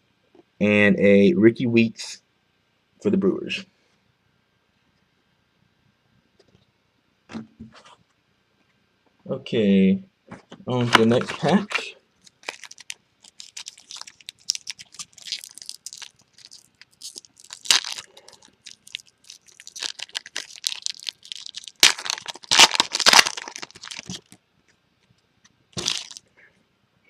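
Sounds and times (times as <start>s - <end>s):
foil wrapper tearing and crinkling: 11.4s - 24.4s, 25.8s - 26.2s.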